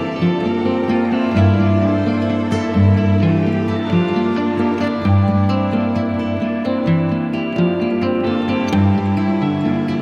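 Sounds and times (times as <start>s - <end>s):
soft plucked-string music: 0.0s - 10.0s.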